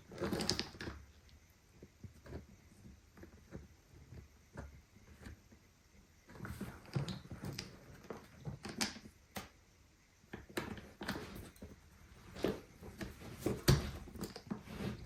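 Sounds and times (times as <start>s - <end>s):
clicks and scrapes on suitcase wheel: 0.0s - 1.0s.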